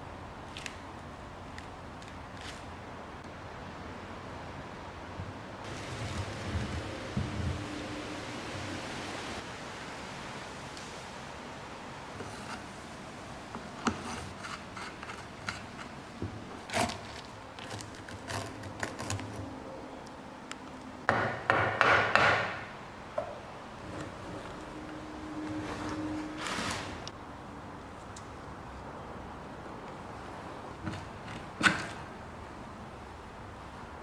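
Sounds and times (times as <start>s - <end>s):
metal scraping: 23.8s - 27.1s.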